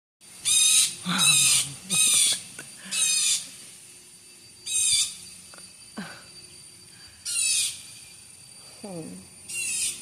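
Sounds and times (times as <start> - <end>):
faint high whine: 0.2 - 10.0
bird giving harsh buzzy calls: 0.4 - 3.6, 4.6 - 5.4, 7.2 - 8.1, 9.5 - 10.0.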